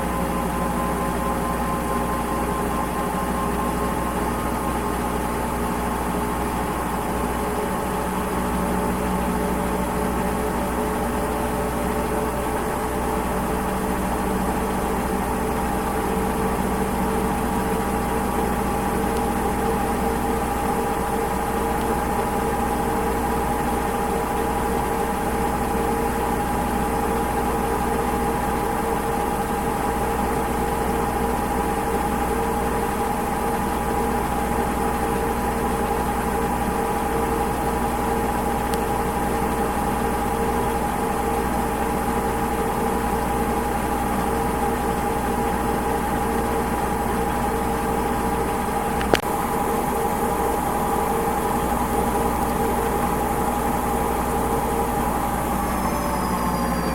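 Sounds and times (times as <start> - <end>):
washing machine running: 0.0 - 56.9
sharp click: 49.0 - 49.3.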